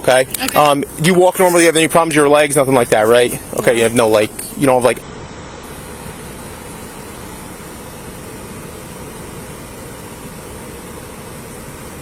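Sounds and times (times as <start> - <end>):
roadside traffic rumble and hiss: 0.0 - 12.0.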